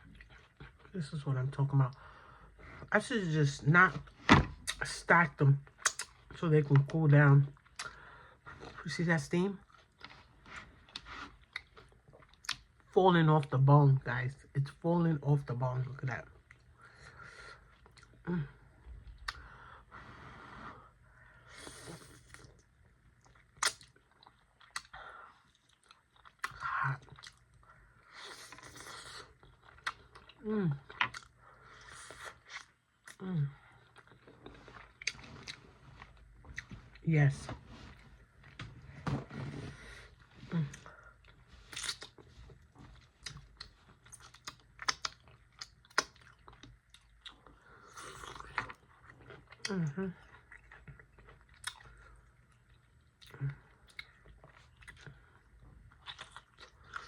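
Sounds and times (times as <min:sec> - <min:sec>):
mouth clicks and smacks: 0:05.8 - 0:06.2, 0:23.6 - 0:23.9, 0:44.3 - 0:46.2
chewing chicken wings: 0:41.2 - 0:57.0.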